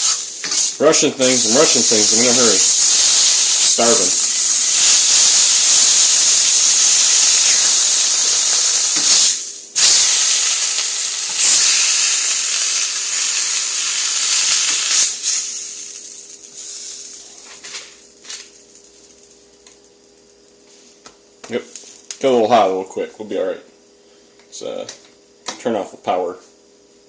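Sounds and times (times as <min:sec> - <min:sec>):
sandwiches sizzling in a hot pan: 0:00.0 - 0:20.8.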